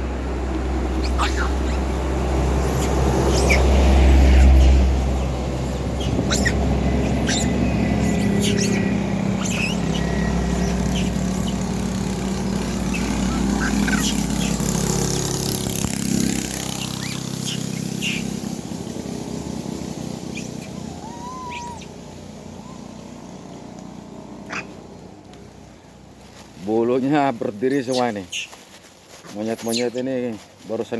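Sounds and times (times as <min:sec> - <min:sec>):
vehicle engine running: 0:00.0 - 0:27.8
bird chirps: 0:01.0 - 0:01.9, 0:02.6 - 0:18.6, 0:20.2 - 0:22.0, 0:27.6 - 0:28.6, 0:29.5 - 0:30.0.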